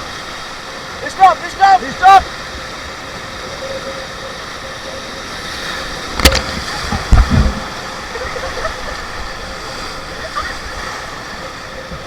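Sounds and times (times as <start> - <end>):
river rapids rushing: 0.0 - 3.7
low thumps: 6.2 - 8.0.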